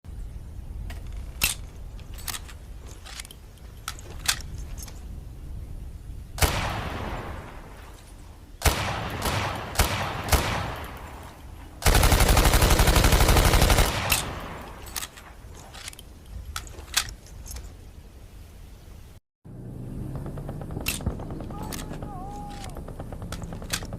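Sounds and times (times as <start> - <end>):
submachine gun single shots: 8.6 - 11.0, 11.8 - 14.8
automatic gunfire burst: 11.8 - 14.3.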